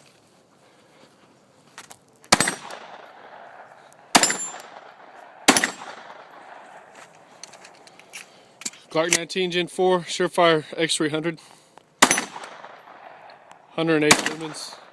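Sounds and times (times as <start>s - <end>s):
pistol shots: 2.3s - 6.9s, 12.0s - 14.9s.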